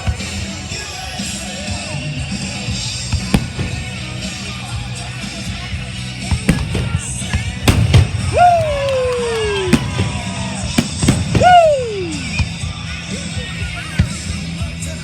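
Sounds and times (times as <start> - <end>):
music playing: 0.0 - 15.0
fireworks bangs: 2.9 - 12.6
falling firework whistles: 8.2 - 12.4.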